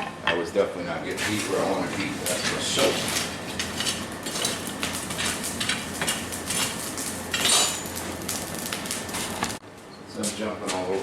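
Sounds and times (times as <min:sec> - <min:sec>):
metal tools clinking: 0:07.3 - 0:08.0.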